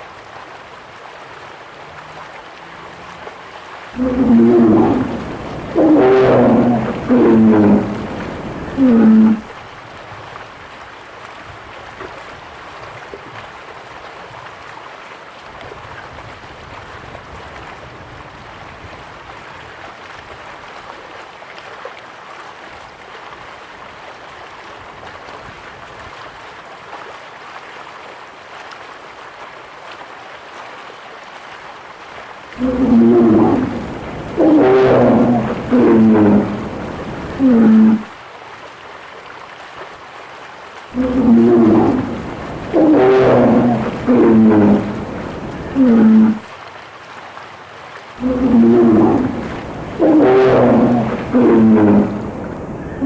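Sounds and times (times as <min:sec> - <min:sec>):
water noise: 0:00.0 - 0:53.0
bear growling roars: 0:04.0 - 0:09.5, 0:32.6 - 0:38.1, 0:40.9 - 0:46.5, 0:48.2 - 0:52.4.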